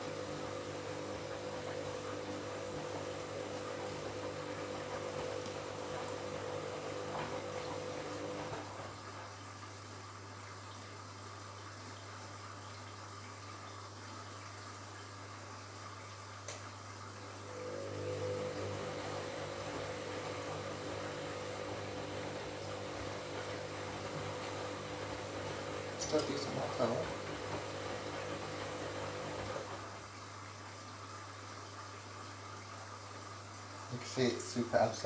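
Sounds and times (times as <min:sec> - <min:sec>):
water rushing into drum: 0:00.0 - 0:09.4, 0:17.2 - 0:30.4.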